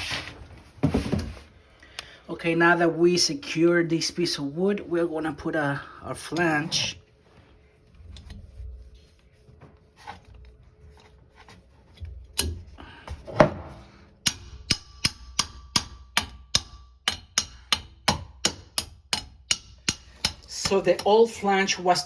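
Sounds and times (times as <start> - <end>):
hammer strikes with metallic ring: 14.2 - 20.5.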